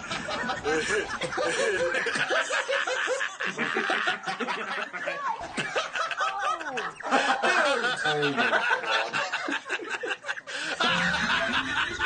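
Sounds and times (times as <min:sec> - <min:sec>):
men laughing: 0:00.0 - 0:12.0.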